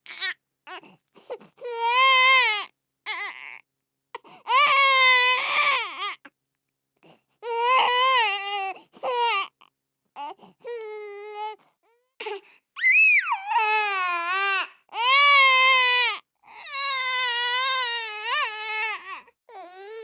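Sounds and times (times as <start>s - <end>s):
baby crying: 0.1s - 0.8s, 1.6s - 3.6s, 4.5s - 6.2s, 7.4s - 9.6s, 12.2s - 20.0s.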